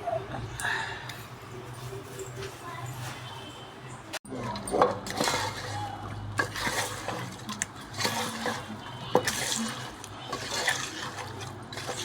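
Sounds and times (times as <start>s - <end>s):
water splashing and pouring: 5.0s - 12.0s.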